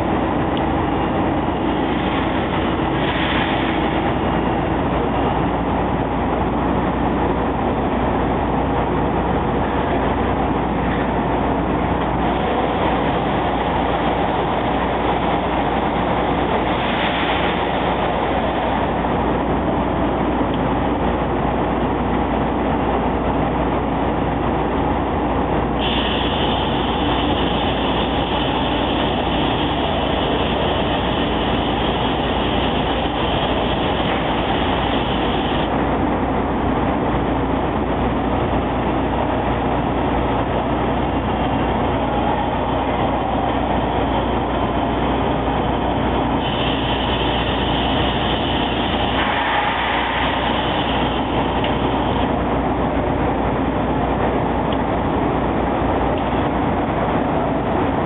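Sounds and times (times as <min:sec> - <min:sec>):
high hiss: 0:25.8 - 0:35.7, 0:46.3 - 0:52.3
drilling machine running: 0:25.8 - 0:35.8.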